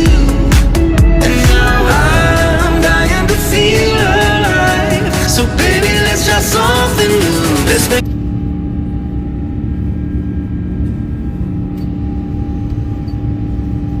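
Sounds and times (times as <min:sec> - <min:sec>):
song with singing: 0:00.0 - 0:08.0
steady tones: 0:00.0 - 0:08.0
jet engines rumbling: 0:00.0 - 0:12.7.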